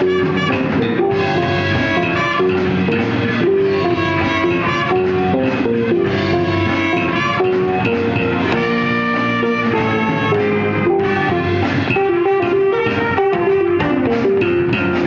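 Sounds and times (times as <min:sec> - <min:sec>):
live funk-jazz band playing: 0:00.0 - 0:15.0.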